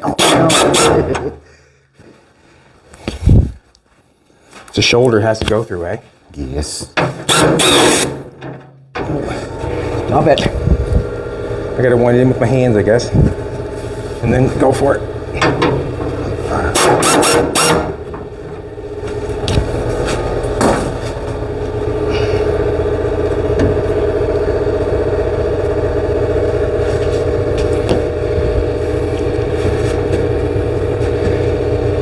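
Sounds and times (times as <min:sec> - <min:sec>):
engine running steadily: 0:07.3 - 0:32.0
loud clattering knocks: 0:15.4 - 0:18.7, 0:19.4 - 0:21.5.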